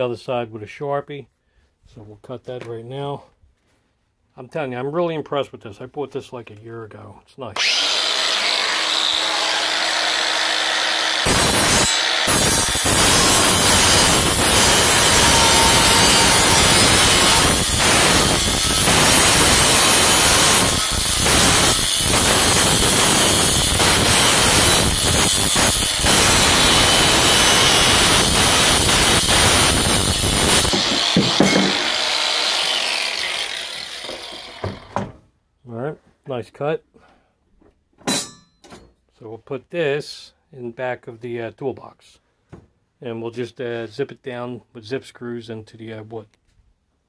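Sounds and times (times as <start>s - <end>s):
power cutter cutting metal: 7.6s - 34.9s.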